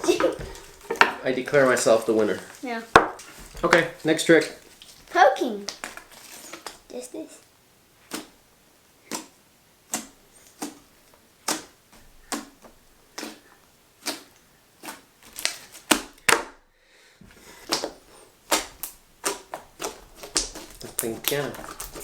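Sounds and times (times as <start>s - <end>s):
fingers poking slime: 9.0s - 16.4s, 17.6s - 22.0s.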